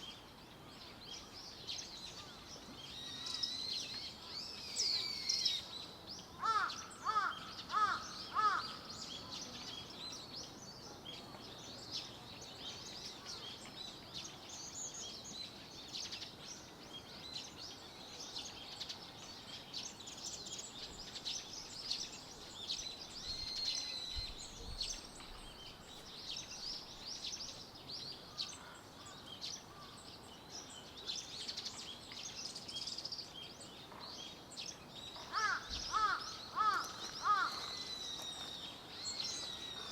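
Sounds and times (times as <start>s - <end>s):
small birds chirping: 0.0s - 39.9s
crow cawing: 6.4s - 8.8s, 35.3s - 37.7s.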